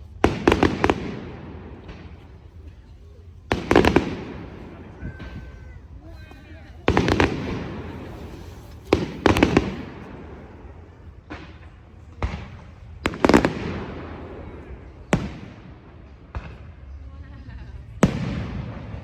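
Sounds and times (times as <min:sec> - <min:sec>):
fireworks shells bursting: 0:06.8 - 0:11.8.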